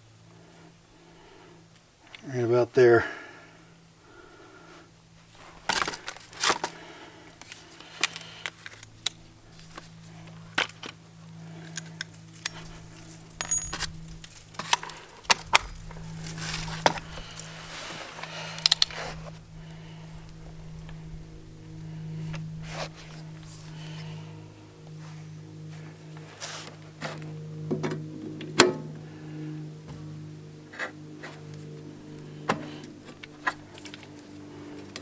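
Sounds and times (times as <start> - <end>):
faint low hum: 3.0 - 35.0
metallic clinks and clicks: 11.8 - 14.9
wrench scraping: 11.8 - 15.0.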